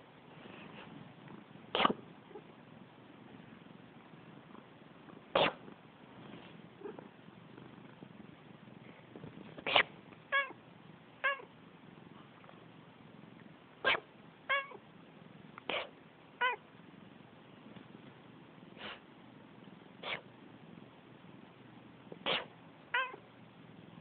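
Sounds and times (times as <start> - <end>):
person sneezing: 1.8 - 2.0, 5.4 - 5.6, 22.3 - 22.5
cat meowing: 9.7 - 10.6, 11.2 - 11.5, 13.9 - 14.8, 16.4 - 16.6, 22.3 - 23.2.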